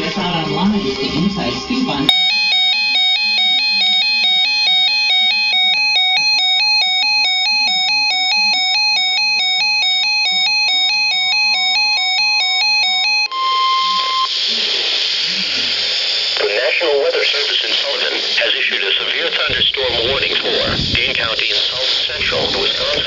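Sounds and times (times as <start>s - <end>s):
steady beep: 2.1s - 14.3s
broadcast static hiss: 13.3s - 23.0s.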